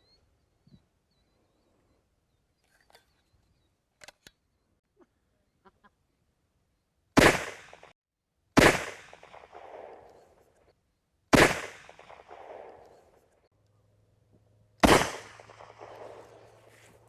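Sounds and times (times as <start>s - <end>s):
flare pistol shots with echo: 7.2s - 7.9s, 8.6s - 10.3s, 11.3s - 13.1s, 14.8s - 16.9s.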